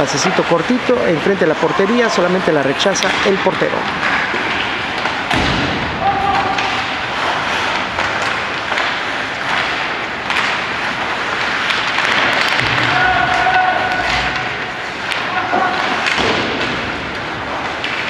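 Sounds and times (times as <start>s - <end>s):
sticks and puck clacking: 0.0s - 18.0s
skates on ice: 0.2s - 18.0s
heavy thud: 5.3s - 6.1s, 12.6s - 14.6s.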